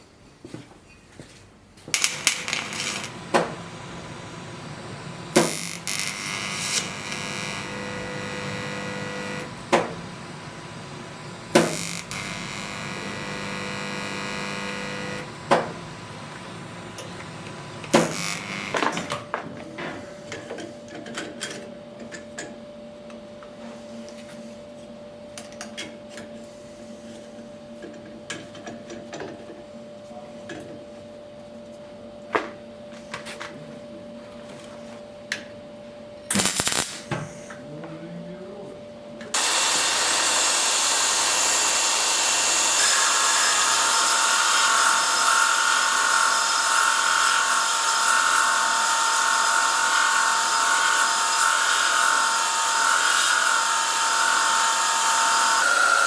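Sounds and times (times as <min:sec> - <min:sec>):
machine hum: 0:01.9 - 0:19.4, 0:39.0 - 0:50.5.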